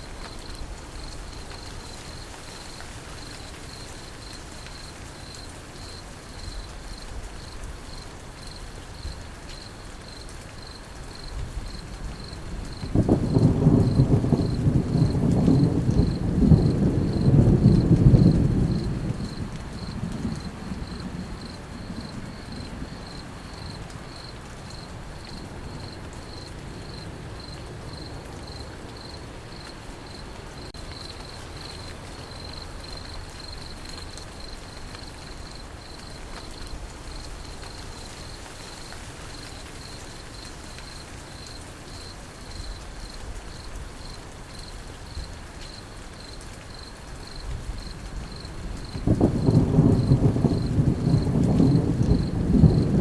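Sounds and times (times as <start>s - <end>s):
rain falling: 0.0s - 53.0s
crickets chirping: 0.2s - 53.0s
distant thunder rumble: 11.4s - 24.2s, 47.5s - 53.0s.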